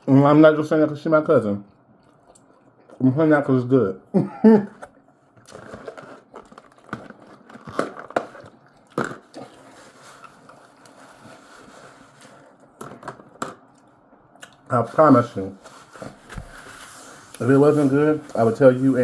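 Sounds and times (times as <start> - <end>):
person chewing food: 1.7 - 3.0, 4.7 - 11.3, 12.1 - 14.7.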